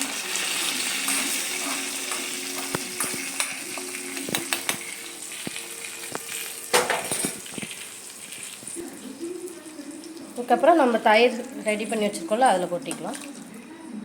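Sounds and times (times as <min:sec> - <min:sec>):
spices sizzling in hot oil: 0:00.0 - 0:13.2
spoon scraping metal pan: 0:00.3 - 0:05.1.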